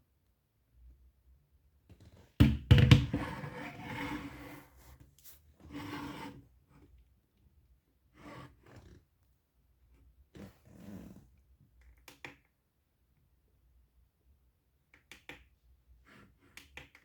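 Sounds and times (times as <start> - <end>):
sharp handling knocks: 2.4 - 3.3.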